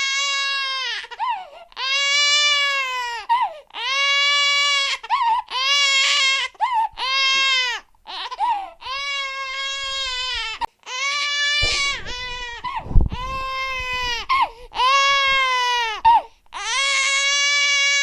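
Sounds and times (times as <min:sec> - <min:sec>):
low thump: 0:11.6 - 0:14.4.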